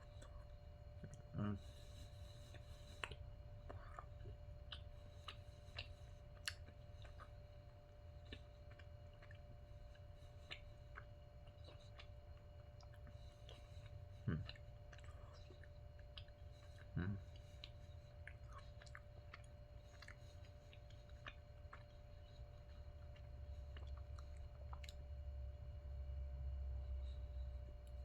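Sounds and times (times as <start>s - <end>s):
mouth chewing clicks and smacks: 0.0s - 25.7s
low throat sound: 14.2s - 14.6s, 16.9s - 17.3s.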